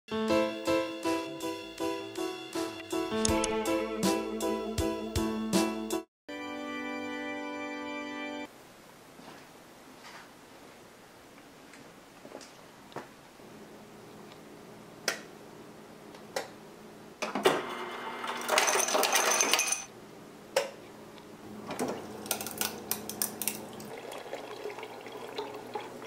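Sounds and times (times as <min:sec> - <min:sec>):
ice dispenser motor humming: 0:17.4 - 0:19.6, 0:21.5 - 0:26.0
ice cubes clattering: 0:18.3 - 0:19.9, 0:22.2 - 0:24.1.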